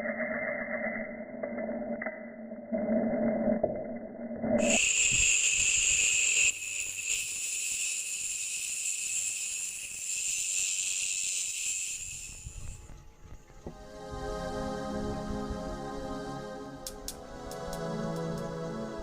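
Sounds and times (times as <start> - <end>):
angle grinder high-pitched hiss: 4.6 - 12.9.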